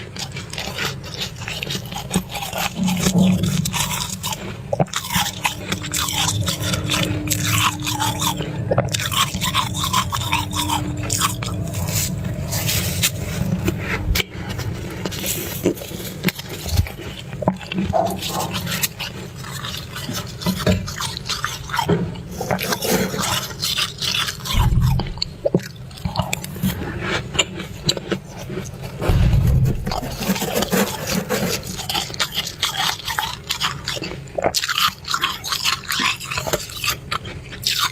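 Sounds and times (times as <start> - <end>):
steady low rumble: 3.0 - 15.5, 24.5 - 25.7, 29.0 - 30.4
heavy low thumps: 24.5 - 25.6, 29.0 - 30.4
ice being scraped and crunched: 28.9 - 33.1.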